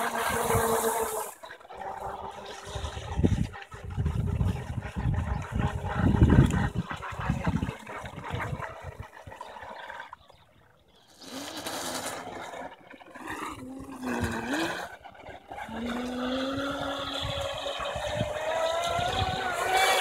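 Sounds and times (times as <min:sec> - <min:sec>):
water splashing: 0:00.0 - 0:20.0
electric motor whining: 0:15.6 - 0:20.0.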